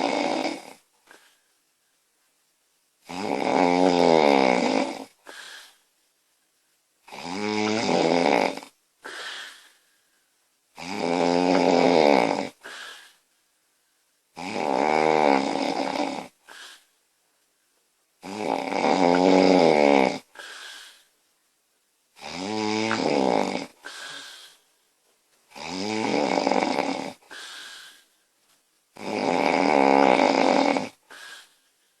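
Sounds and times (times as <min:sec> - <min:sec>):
woman snoring loudly: 0:00.0 - 0:00.8, 0:03.0 - 0:05.7, 0:07.1 - 0:09.6, 0:10.8 - 0:13.1, 0:14.4 - 0:16.8, 0:18.2 - 0:20.5, 0:22.2 - 0:24.6, 0:25.5 - 0:28.0, 0:29.0 - 0:31.5.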